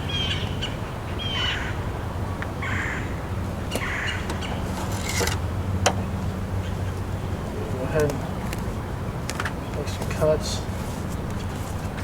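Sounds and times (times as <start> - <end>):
small birds chirping: 2.6 - 4.9.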